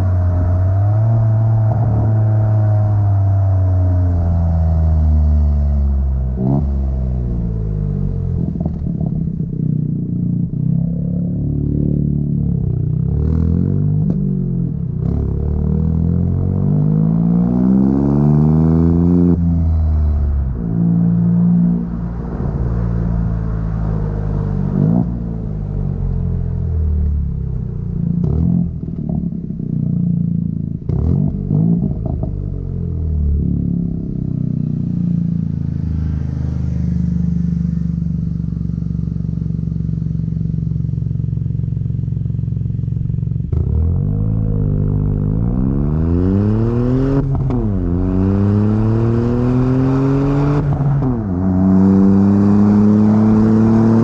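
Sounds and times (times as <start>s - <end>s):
car exhaust note revving: 17.4s - 54.0s.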